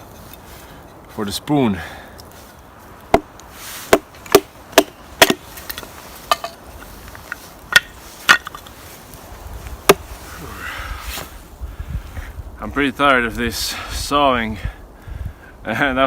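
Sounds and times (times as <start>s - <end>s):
wood being chopped: 3.1s - 6.6s, 7.7s - 8.6s, 9.8s - 10.1s.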